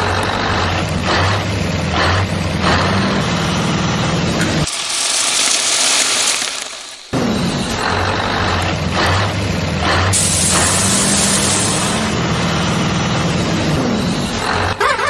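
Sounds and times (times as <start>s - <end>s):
truck engine idling: 0.0s - 5.1s, 6.3s - 15.0s
loud hiss of air: 10.2s - 12.0s.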